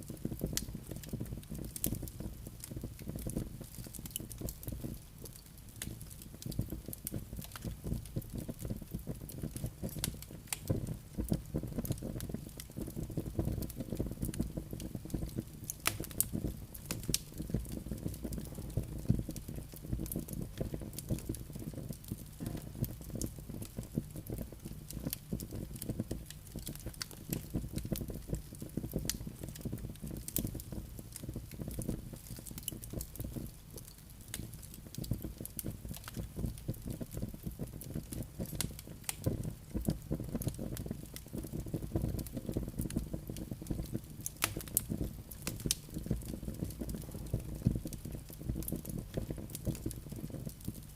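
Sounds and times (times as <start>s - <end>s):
logs crackling and popping: 0.0s - 50.9s
low rumble of flame: 0.0s - 50.9s.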